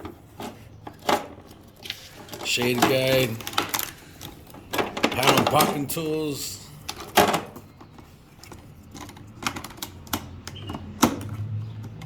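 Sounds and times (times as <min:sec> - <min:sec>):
tools clattering in toolbox: 0:02.2 - 0:06.1.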